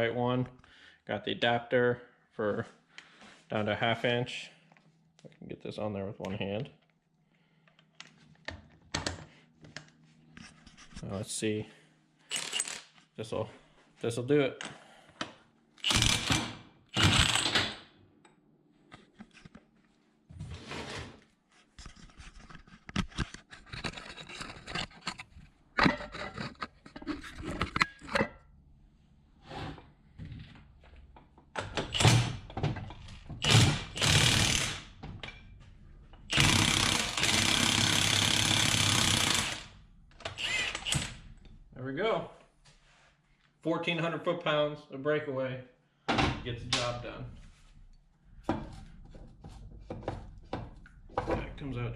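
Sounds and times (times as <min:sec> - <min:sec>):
impact wrench hammering: 0:15.8 - 0:17.8, 0:33.4 - 0:35.0, 0:36.3 - 0:39.7.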